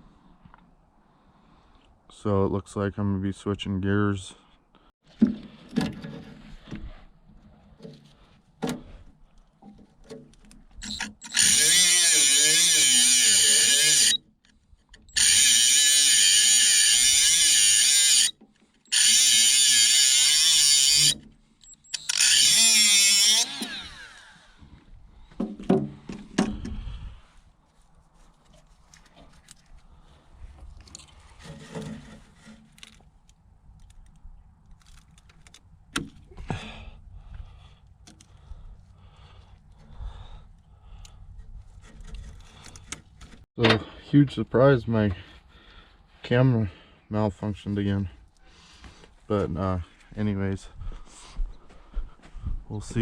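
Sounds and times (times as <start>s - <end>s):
tools clicking and knocking: 9.6s - 16.0s
handheld power tool running: 10.8s - 14.2s, 15.1s - 24.6s.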